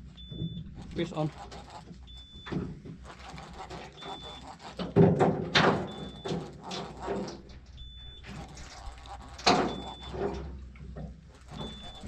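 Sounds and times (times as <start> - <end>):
knocks and thumps on a boat: 1.5 - 3.1, 4.6 - 7.9.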